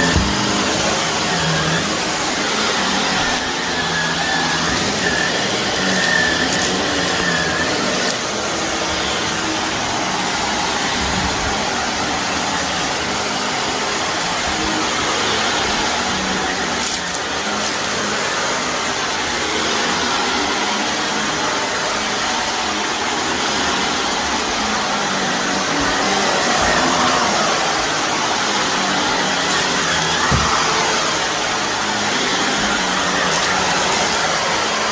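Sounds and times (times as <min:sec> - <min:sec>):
vacuum cleaner running: 0:00.0 - 0:34.9.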